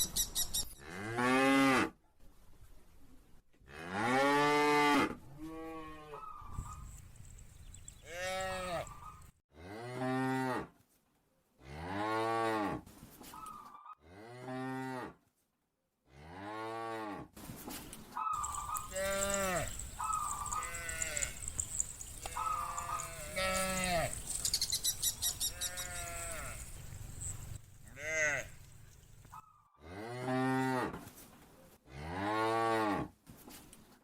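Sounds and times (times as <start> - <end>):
cows mooing: 8.0 - 9.2, 18.4 - 29.3.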